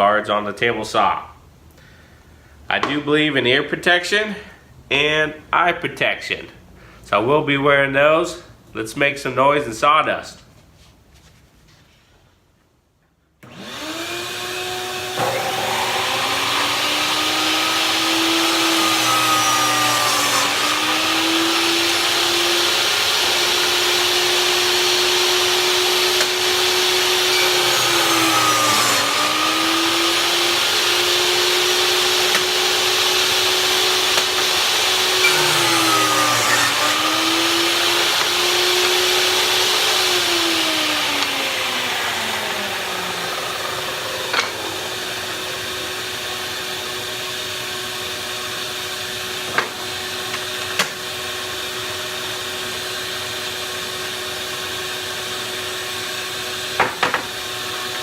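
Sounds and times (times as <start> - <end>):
table saw whining: 13.4 - 58.0.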